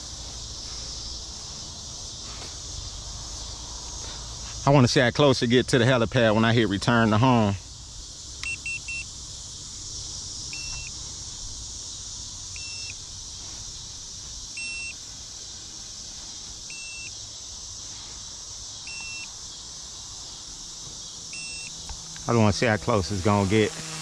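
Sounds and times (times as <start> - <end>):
insects chorus: 0.0 - 24.0
electronic beeping: 8.4 - 9.0, 10.5 - 10.9, 12.6 - 13.0, 14.6 - 15.0, 16.7 - 17.1, 18.9 - 19.3, 21.3 - 21.8.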